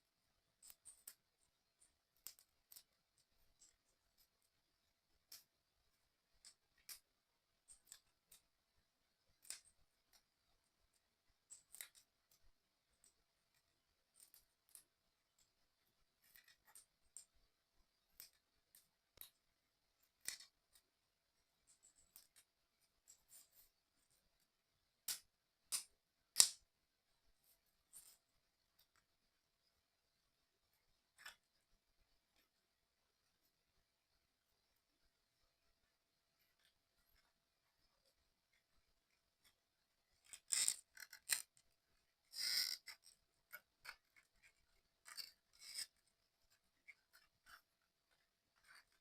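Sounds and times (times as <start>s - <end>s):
plastic parts clicking and tapping: 0.5s - 26.7s, 36.4s - 49.0s.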